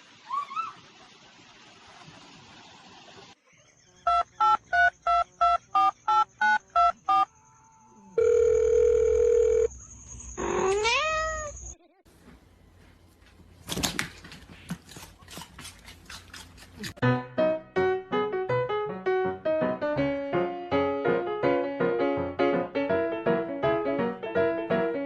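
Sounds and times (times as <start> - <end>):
steady telephone tone: 8.2 - 9.7
cat meowing: 10.6 - 11.6.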